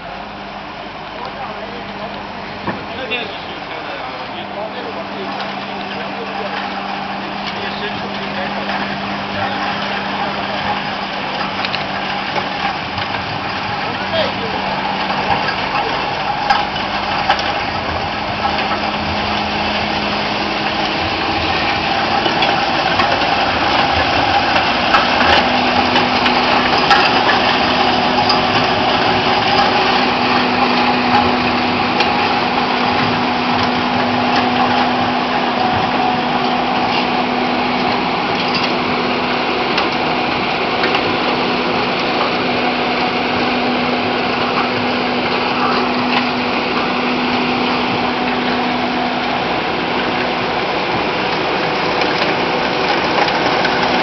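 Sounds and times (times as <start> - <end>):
loader engine and snow blower running: 0.0 - 54.0.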